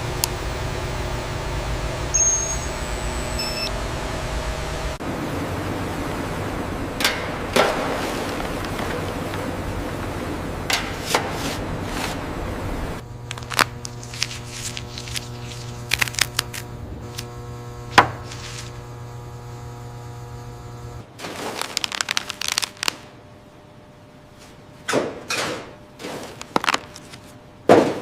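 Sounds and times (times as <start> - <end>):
machinery humming: 0.0 - 28.0.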